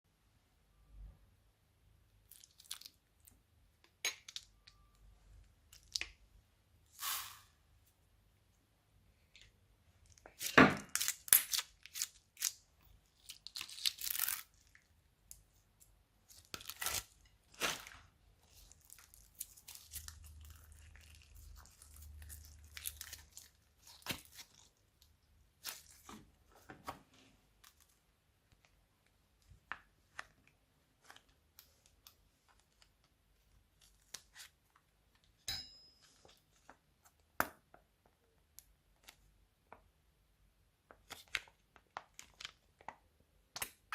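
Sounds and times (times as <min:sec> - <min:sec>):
slime squishing by hand: 0:10.1 - 0:35.3.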